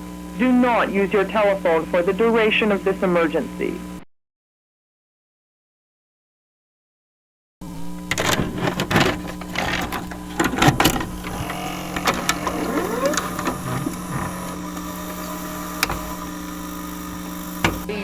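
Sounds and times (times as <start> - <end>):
electrical hum: 0.0 - 4.0, 7.6 - 18.0.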